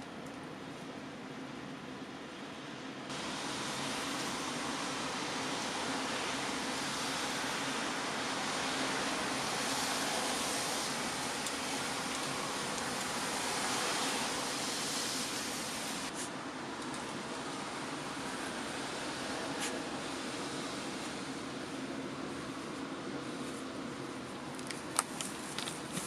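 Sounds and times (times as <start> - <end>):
rain hissing: 3.1 - 16.4.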